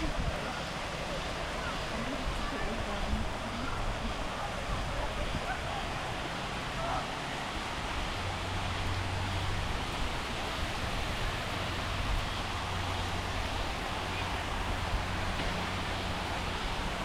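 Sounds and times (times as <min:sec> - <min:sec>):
steady rain: 0:00.0 - 0:17.0.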